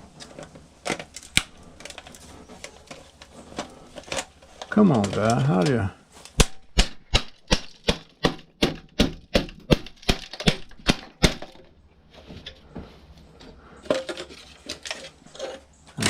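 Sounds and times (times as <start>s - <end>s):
soft clicks and handling noise: 0.1s - 6.4s
rapid sharp knocks: 6.4s - 11.6s.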